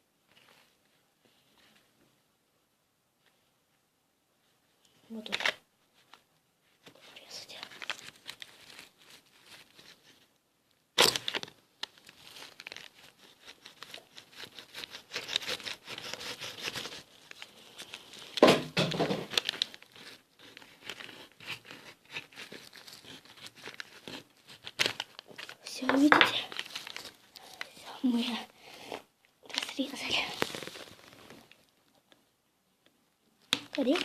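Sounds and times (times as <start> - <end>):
knife cutting plastic: 11.0 - 27.5.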